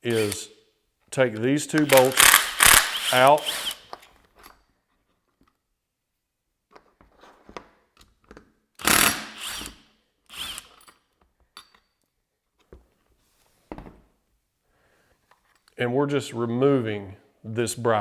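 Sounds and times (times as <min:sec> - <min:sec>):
cordless drill running: 0:00.0 - 0:00.4, 0:01.8 - 0:03.9, 0:08.8 - 0:10.8.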